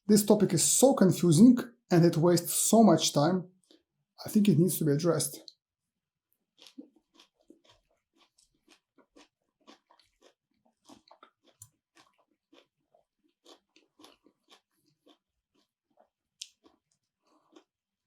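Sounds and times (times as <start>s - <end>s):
chewing crunchy vegetables: 3.6s - 4.8s, 6.4s - 18.0s.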